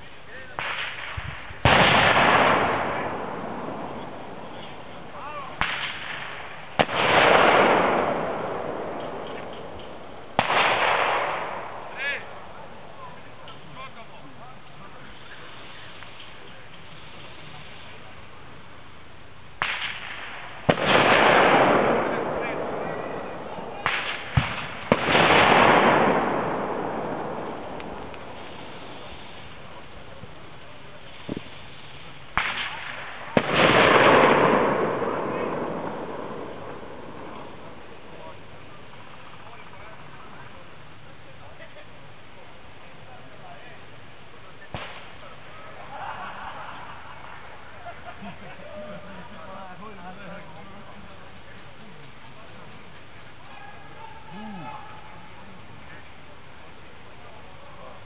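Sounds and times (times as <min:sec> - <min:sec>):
pyrotechnic blasts: 0:00.0 - 0:42.8, 0:43.4 - 0:48.2
sharp cracks: 0:00.5 - 0:13.6, 0:19.6 - 0:30.2, 0:31.0 - 0:39.8, 0:44.6 - 0:45.4.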